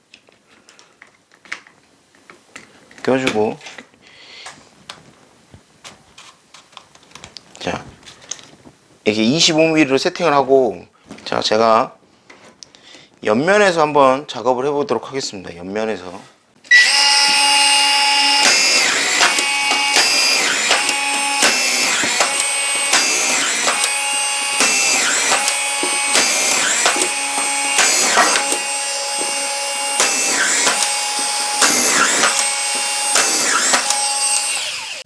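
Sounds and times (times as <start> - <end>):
cordless screwdriver motor whine: 16.7 - 35.0.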